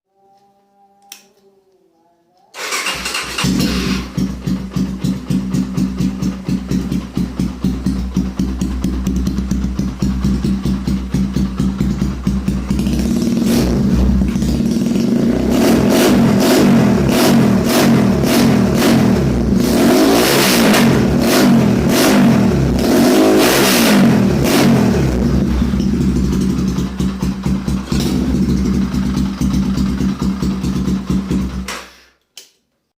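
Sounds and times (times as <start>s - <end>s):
motorcycle engine revving: 2.6s - 31.7s.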